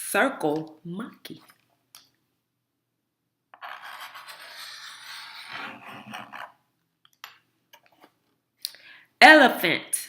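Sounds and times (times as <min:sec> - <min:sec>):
marker scratching on surface: 0:03.6 - 0:06.6.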